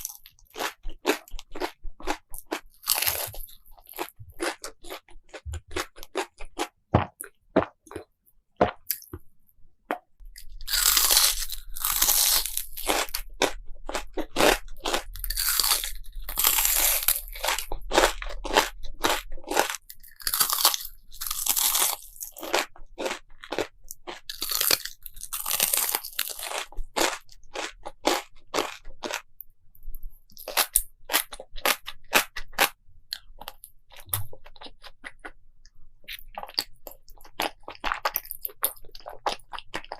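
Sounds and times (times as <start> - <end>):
loud crunchy chewing: 0.0 - 9.1, 10.2 - 29.3, 30.3 - 35.4, 36.1 - 39.9
crunching bites: 0.0 - 9.2, 9.9 - 29.3.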